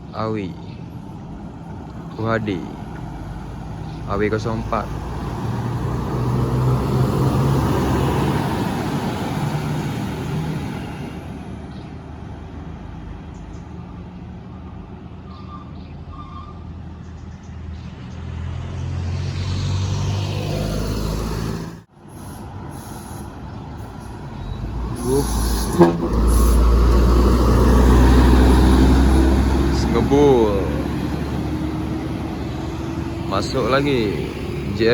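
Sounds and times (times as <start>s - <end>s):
buses passing on road: 0.0s - 34.9s.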